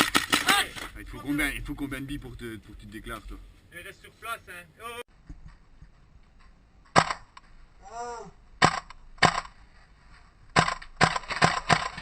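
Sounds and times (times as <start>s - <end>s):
airsoft gun shots: 7.0s - 7.3s, 8.6s - 9.5s
person shouting: 7.8s - 8.4s.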